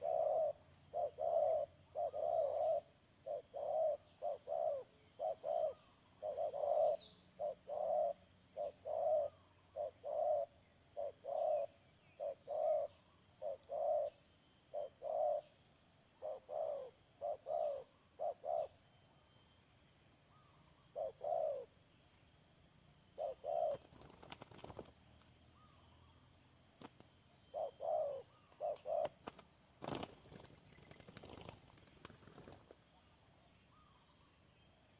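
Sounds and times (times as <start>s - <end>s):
doves cooing: 0.0s - 15.5s, 16.2s - 18.8s, 20.9s - 21.8s, 23.2s - 24.9s, 27.5s - 32.7s.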